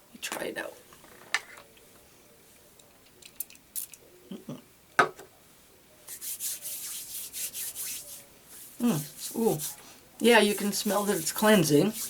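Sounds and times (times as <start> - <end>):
hands rubbing together: 6.1 - 12.0.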